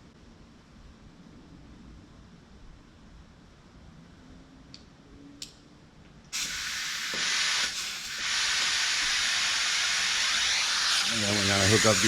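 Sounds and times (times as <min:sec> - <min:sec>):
compressed air hissing: 0:06.4 - 0:12.0.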